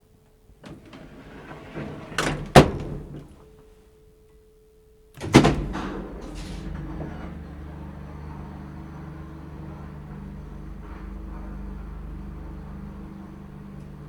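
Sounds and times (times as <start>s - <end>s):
elevator low rumble: 0.4s - 3.9s, 5.1s - 14.0s
loud elevator clunk: 0.6s - 3.6s, 5.2s - 14.0s
elevator door banging shut: 0.7s - 3.4s, 5.2s - 14.0s.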